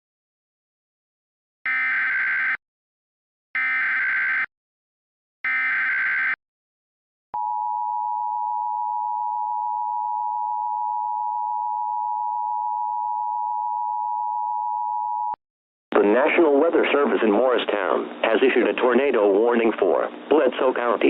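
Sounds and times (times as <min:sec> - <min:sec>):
screechy digital data bursts: 0:01.7 - 0:02.6, 0:03.6 - 0:04.5, 0:05.5 - 0:06.4.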